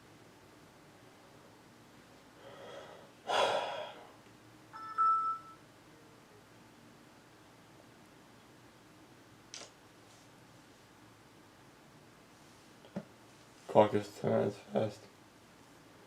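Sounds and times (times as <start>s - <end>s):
person breathing out heavily: 2.4s - 4.1s.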